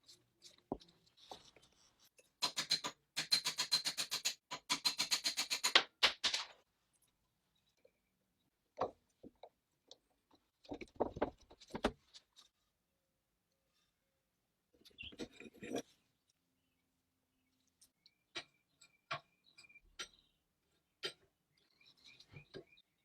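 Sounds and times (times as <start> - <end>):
knocks and clatters: 10.6 - 12.1.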